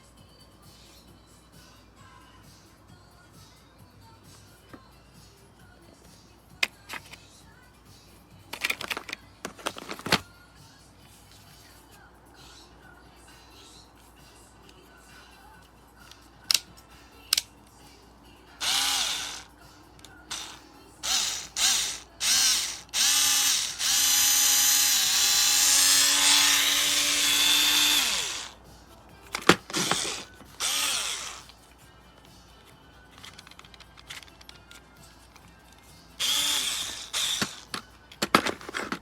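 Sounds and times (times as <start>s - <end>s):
electric screwdriver motor: 18.6s - 19.5s, 20.3s - 28.6s, 29.5s - 31.5s, 36.2s - 37.8s.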